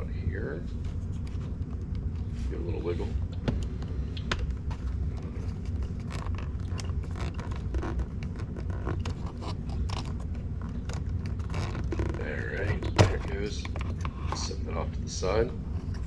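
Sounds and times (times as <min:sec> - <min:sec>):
plastic scraping and clicking: 0:04.4 - 0:14.5.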